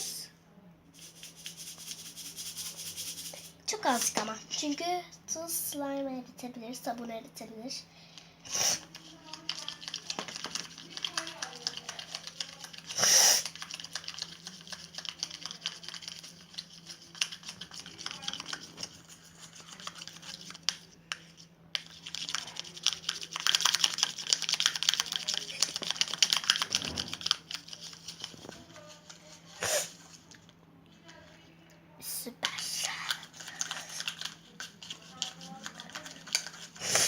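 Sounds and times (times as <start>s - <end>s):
slime clicking and crackling by hand: 8.9s - 20.9s, 21.8s - 28.7s.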